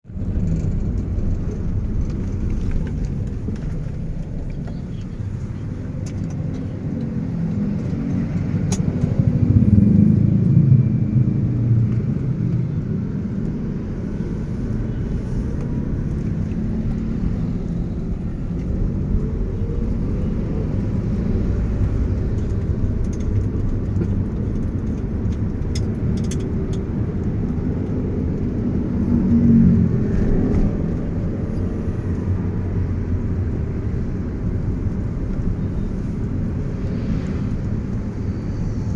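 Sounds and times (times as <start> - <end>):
low rumble of engine and tyres: 0.0 - 38.9.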